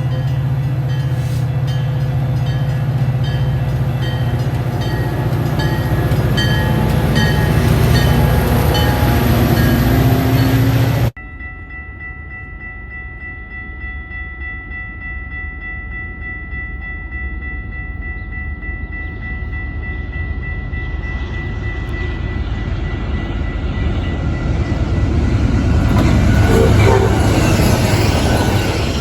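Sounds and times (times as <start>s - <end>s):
train rumbling: 0.0s - 11.2s, 16.8s - 29.0s
steady high-pitched tone: 25.8s - 29.0s.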